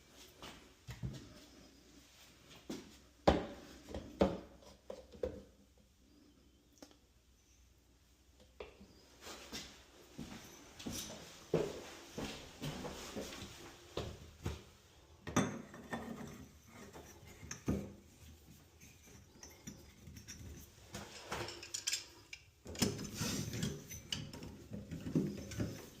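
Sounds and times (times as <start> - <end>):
metal parts clinking and knocking: 18.8 - 26.0.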